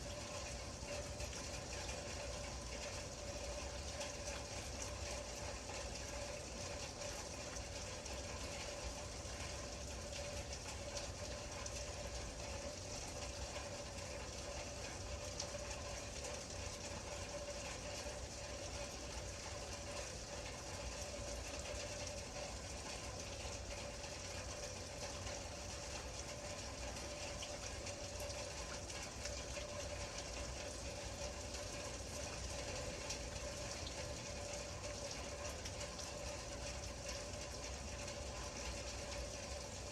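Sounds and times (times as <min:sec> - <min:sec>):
constant low hum: 0:00.0 - 0:39.9
steady rain pattering: 0:00.0 - 0:39.9.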